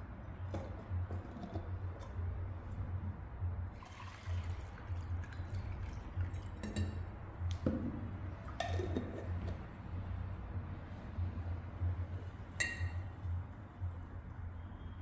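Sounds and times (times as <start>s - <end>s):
liquid dripping and pouring: 3.8s - 9.7s
glass or spoon clinking: 12.6s - 13.1s.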